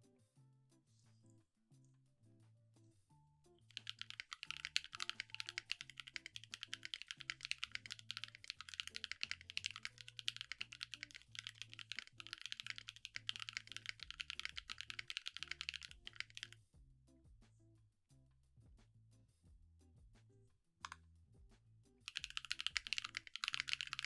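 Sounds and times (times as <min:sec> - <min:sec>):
soft background music: 0:00.0 - 0:12.2, 0:15.1 - 0:24.0
fast mechanical keyboard typing: 0:03.7 - 0:16.6, 0:22.1 - 0:24.0.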